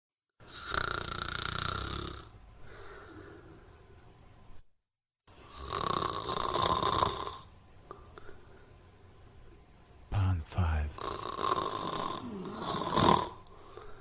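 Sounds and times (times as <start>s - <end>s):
person snoring: 0.5s - 2.3s, 5.4s - 7.5s, 10.6s - 13.4s.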